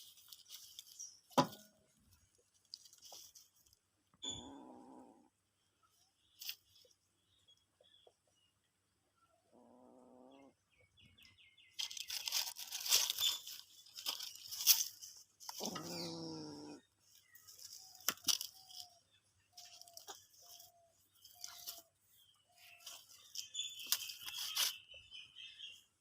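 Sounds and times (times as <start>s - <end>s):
rustling scuffle: 0.0s - 3.8s, 11.8s - 16.3s
cat crying: 15.7s - 16.8s.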